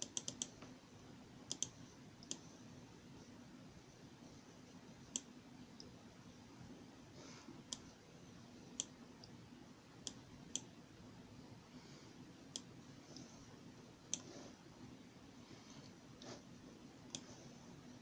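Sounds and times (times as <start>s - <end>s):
sharp clicks: 0.0s - 0.6s, 1.5s - 2.4s
faint low hum: 0.0s - 18.0s.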